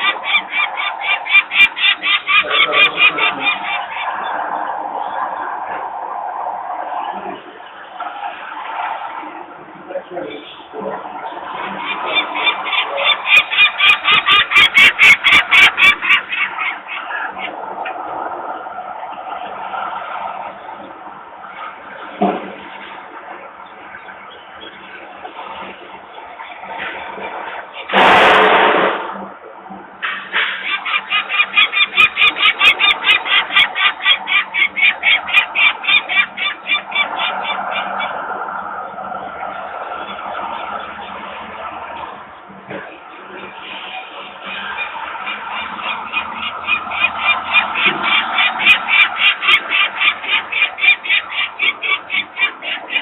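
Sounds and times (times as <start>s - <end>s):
falcon alarm call: 0.0s - 4.4s, 11.7s - 17.4s, 30.6s - 38.3s
steady mechanical noise: 0.0s - 53.0s.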